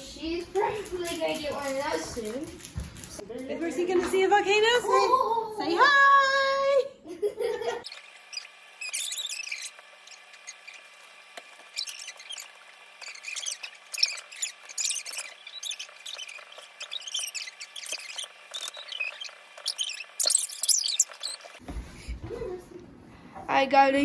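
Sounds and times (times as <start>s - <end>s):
high-pitched squeaks and chirps: 7.8s - 21.6s.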